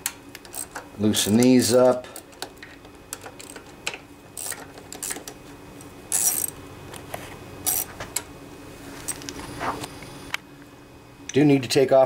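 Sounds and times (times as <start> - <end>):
metallic clinks and rattles of tools: 4.4 - 5.3, 6.1 - 6.6, 7.7 - 7.9.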